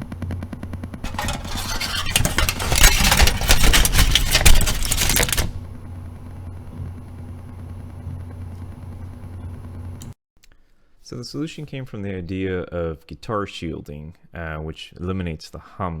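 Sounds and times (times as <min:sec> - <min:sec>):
dense crackling: 0:01.1 - 0:05.6.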